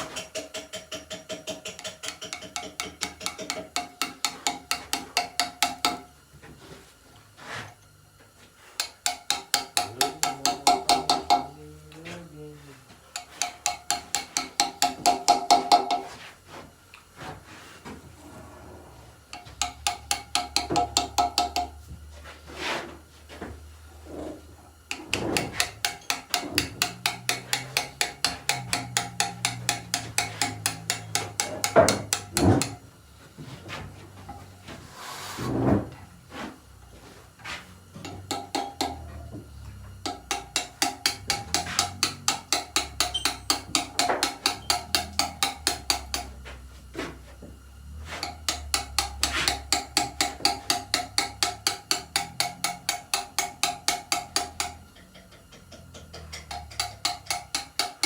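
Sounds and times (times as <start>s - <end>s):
mallet striking chisel into stone: 0.0s - 6.0s, 8.8s - 11.6s, 13.2s - 16.1s, 19.3s - 21.8s, 24.9s - 32.8s, 38.0s - 39.1s, 40.0s - 46.4s, 48.2s - 54.8s, 55.6s - 58.0s.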